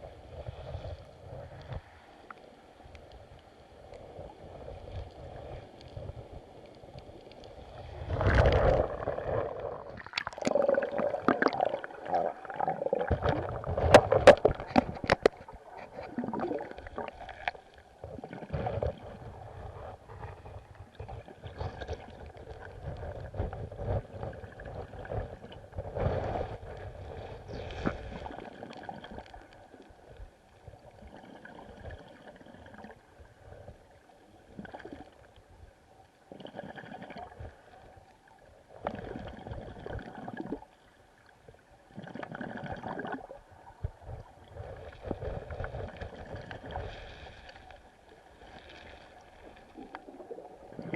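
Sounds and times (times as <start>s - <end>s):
underwater river rushing and gurgling: 0.0s - 50.9s
small clicks and knocks: 13.8s - 16.0s.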